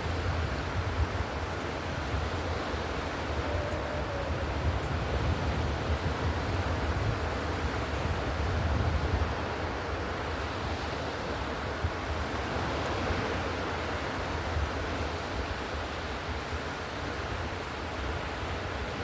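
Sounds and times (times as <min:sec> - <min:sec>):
ocean surf: 0:00.0 - 0:19.0.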